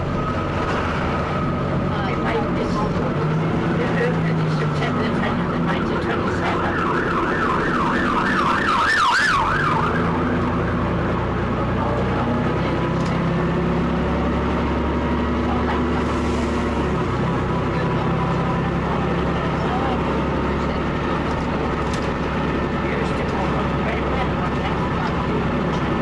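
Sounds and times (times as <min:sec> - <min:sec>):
diesel bus engine running: 0:00.0 - 0:26.0
emergency vehicle siren yelping: 0:05.0 - 0:11.4.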